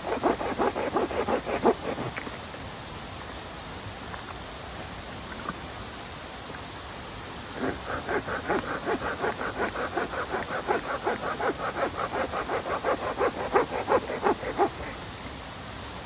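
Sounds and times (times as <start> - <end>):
quick rasping strokes: 0.0 - 2.2, 7.6 - 15.0.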